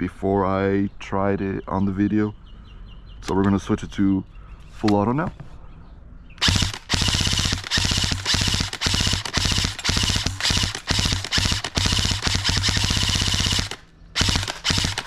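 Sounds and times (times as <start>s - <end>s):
airsoft rifle firing bursts: 6.4s - 15.0s.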